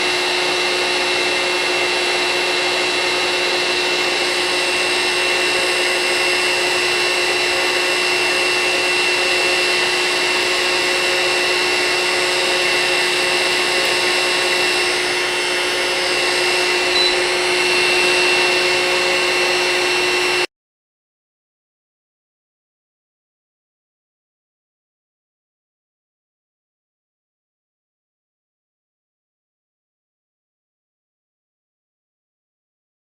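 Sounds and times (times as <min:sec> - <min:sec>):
heat gun blowing air: 0:00.0 - 0:20.5
motor hum and high whine: 0:00.0 - 0:20.5.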